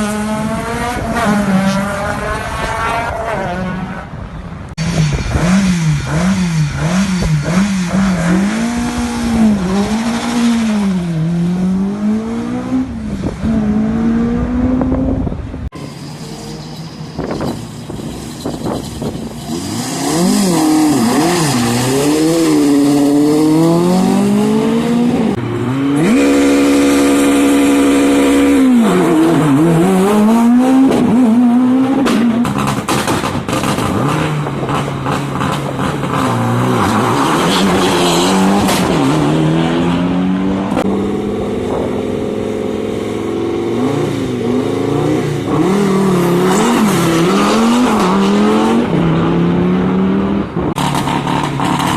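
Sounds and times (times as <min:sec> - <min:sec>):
rally car engines revving: 0:00.0 - 0:51.9
exhaust crackles and backfires: 0:32.0 - 0:39.4, 0:50.4 - 0:51.9.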